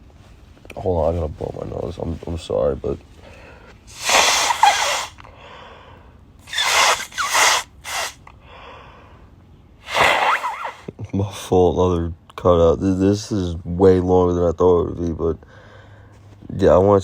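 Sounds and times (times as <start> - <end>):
person blowing nose: 3.9 - 5.2, 6.5 - 8.3, 9.8 - 10.9.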